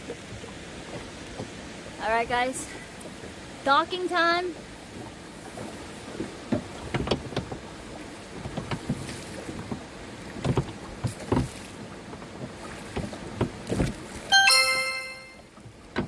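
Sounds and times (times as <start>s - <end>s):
paddle strokes in water: 0.0s - 14.4s
wind: 0.0s - 16.0s
paddle knocking on hull: 4.5s - 14.3s
water rushing: 9.9s - 15.9s.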